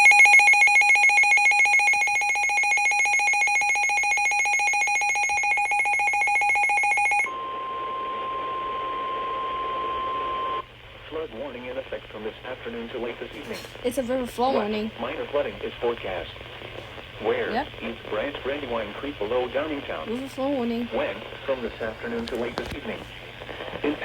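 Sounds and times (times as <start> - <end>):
shrill electronic alarm pulsing: 0.0 - 7.4
radio static: 10.9 - 24.0.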